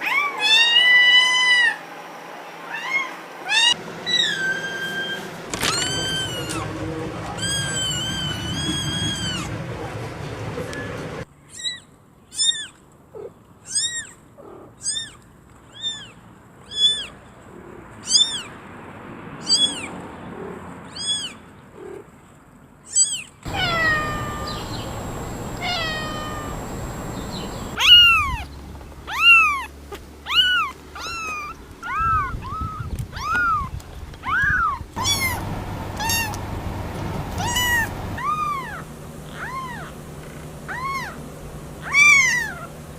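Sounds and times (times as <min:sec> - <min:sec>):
kittens meowing: 0:02.7 - 0:09.5, 0:11.5 - 0:17.2, 0:22.9 - 0:28.5, 0:29.1 - 0:40.0, 0:40.7 - 0:41.2, 0:41.8 - 0:42.7.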